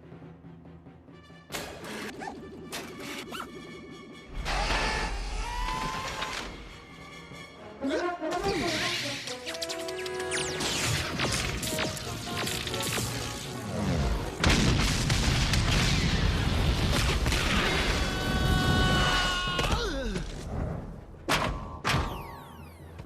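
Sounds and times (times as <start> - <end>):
cartoon soundtrack music: 0.0 - 14.5.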